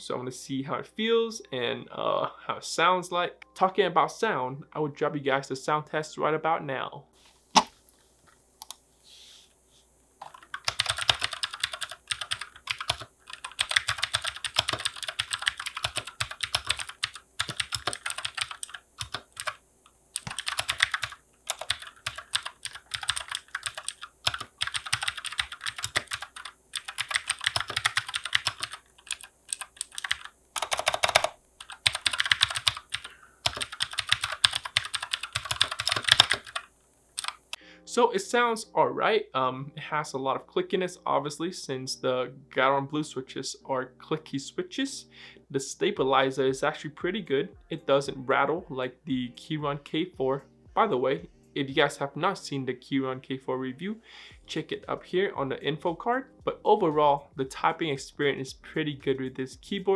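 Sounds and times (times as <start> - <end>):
clicky mechanical keyboard typing: 10.2 - 19.6, 20.2 - 37.4.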